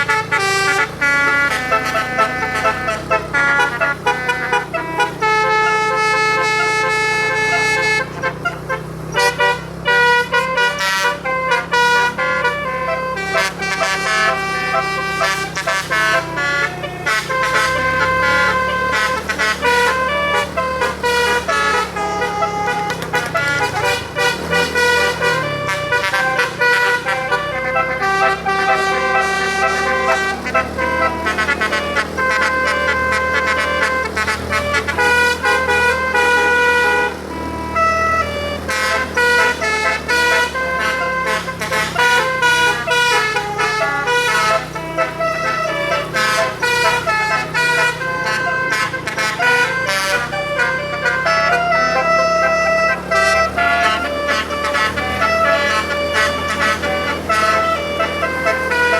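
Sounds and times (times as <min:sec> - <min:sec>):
bus horn playing a melody: 0:00.0 - 0:58.9.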